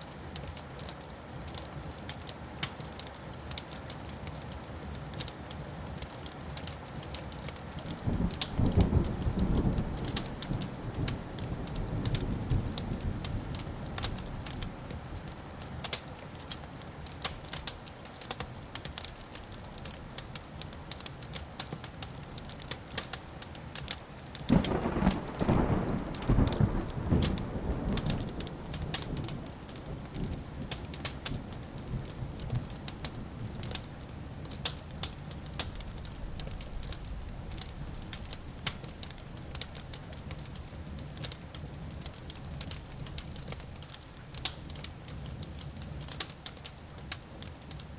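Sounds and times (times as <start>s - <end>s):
wood fire crackling and popping: 0.0s - 47.9s
thunder rumbling: 24.5s - 30.7s.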